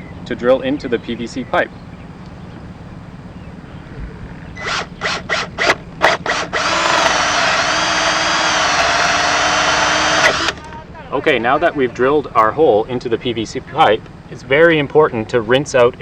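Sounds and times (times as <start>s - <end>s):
power drill boring into plastic pipe: 4.6s - 10.7s.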